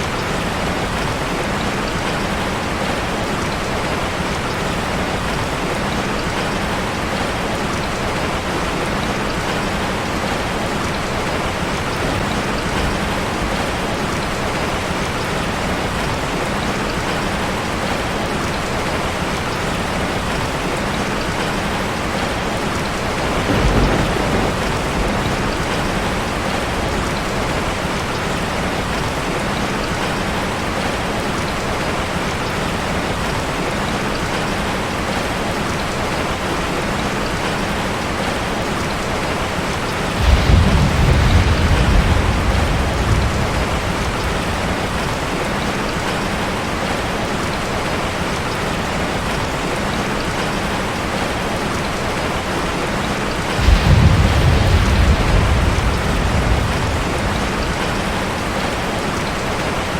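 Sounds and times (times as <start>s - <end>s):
rain falling on a street: 0.0s - 59.9s
deep rumble: 53.6s - 58.8s.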